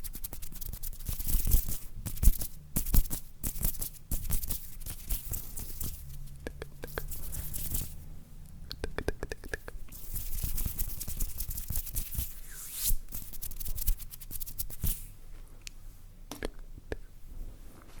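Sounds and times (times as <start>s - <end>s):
hands scratching and rustling objects: 0.0s - 8.0s, 9.9s - 15.1s.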